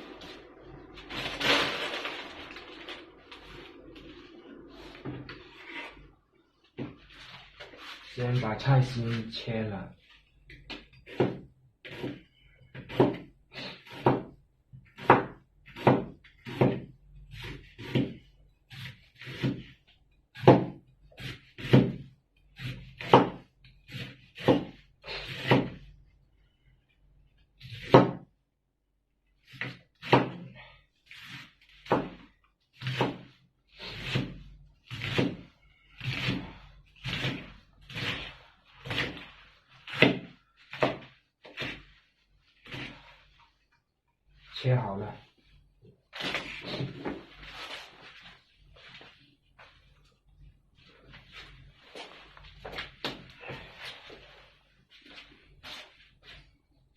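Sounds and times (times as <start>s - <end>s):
knife chopping on cutting board: 10.7s - 12.2s, 12.8s - 14.3s, 15.0s - 19.7s, 20.4s - 25.8s, 32.8s - 33.3s, 34.9s - 35.4s, 39.9s - 41.8s.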